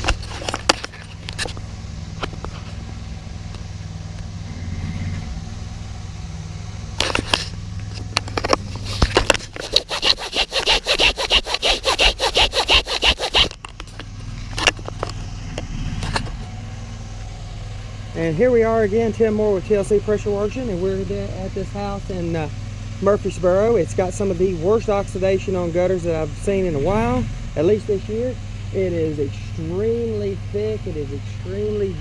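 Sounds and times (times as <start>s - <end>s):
low engine hum: 0.0s - 9.9s, 12.8s - 32.0s
brush scrubbing metal gutter: 8.6s - 13.6s.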